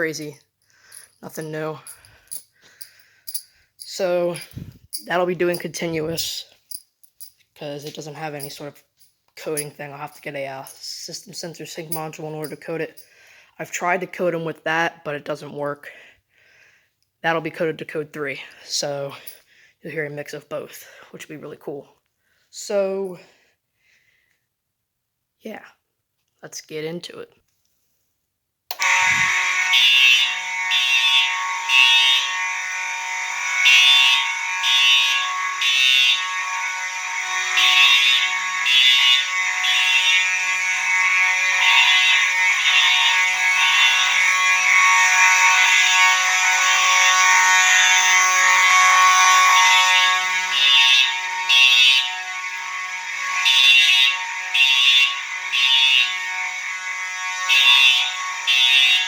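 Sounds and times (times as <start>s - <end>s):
continuous fire alarm horn: 0.0s - 6.8s, 7.7s - 8.8s, 9.4s - 14.1s, 17.5s - 21.6s, 28.7s - 59.0s
fire alarm horn blasts: 0.0s - 6.8s, 7.6s - 8.8s, 9.4s - 13.9s, 28.7s - 59.0s.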